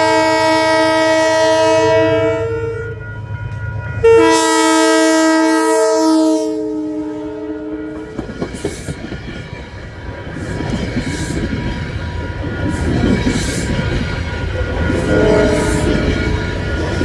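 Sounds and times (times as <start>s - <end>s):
train horn blast: 0.0s - 8.2s, 14.8s - 16.4s
diesel train rumble: 0.0s - 17.0s
wheels clattering over rails: 7.9s - 17.0s.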